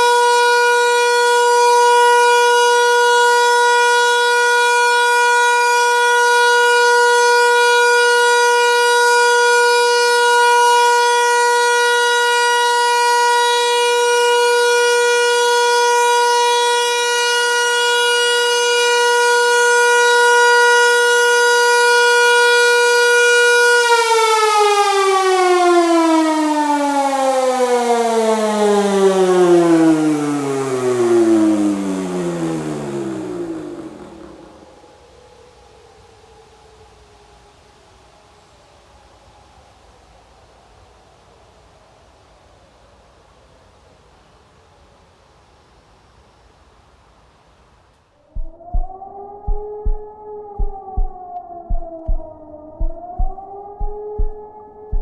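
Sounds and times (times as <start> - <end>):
siren winding down: 0.0 - 35.2, 48.3 - 55.0
motor siren steady tone: 0.0 - 37.0, 48.3 - 55.0.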